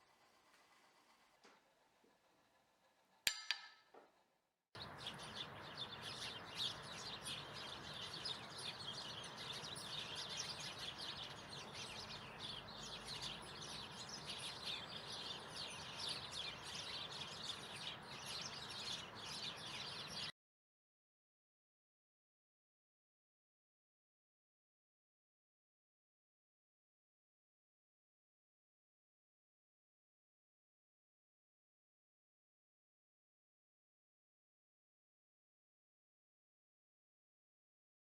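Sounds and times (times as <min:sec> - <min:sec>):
short ringing clink: 0:03.3 - 0:03.9
small birds chirping: 0:04.8 - 0:20.3.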